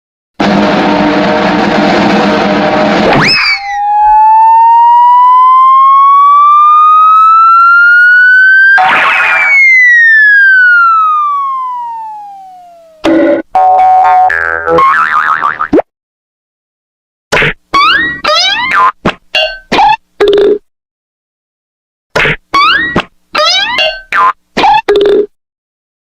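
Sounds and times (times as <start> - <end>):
noisy effect with upward sweep: 0.4 - 14.8
electronic siren-like tone: 3.1 - 13.4.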